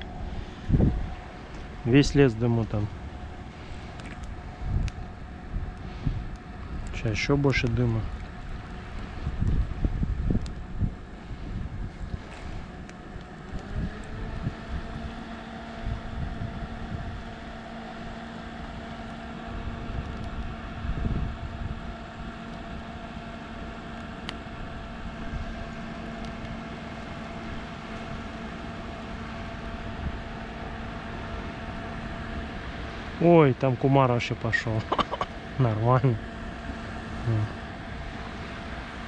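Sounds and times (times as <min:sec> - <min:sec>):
wind buffeting microphone: 0:00.0 - 0:18.9, 0:19.5 - 0:22.8.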